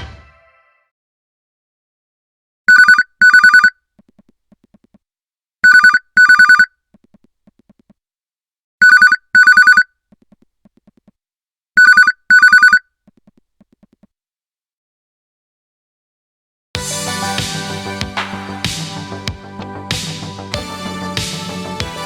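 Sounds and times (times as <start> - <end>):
telephone-style double ring: 8.8 - 9.8, 11.8 - 12.8.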